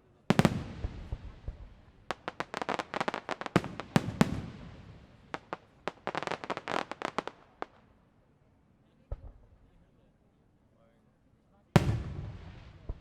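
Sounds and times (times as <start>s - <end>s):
fireworks booming bangs: 0.3s - 7.8s, 11.8s - 13.0s
fireworks crackling: 0.3s - 7.8s, 11.8s - 13.0s.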